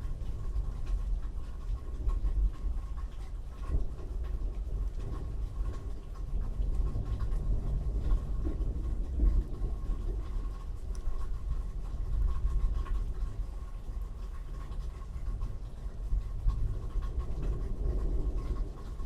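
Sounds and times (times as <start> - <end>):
rain pattering: 0.0 - 19.0
rolling thunder: 0.0 - 19.0.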